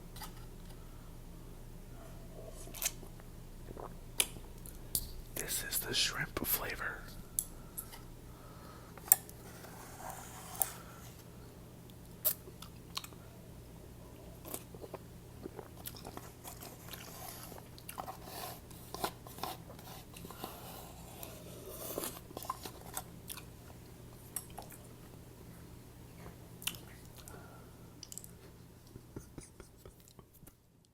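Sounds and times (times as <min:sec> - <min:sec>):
wet chewing: 0:14.4 - 0:18.2.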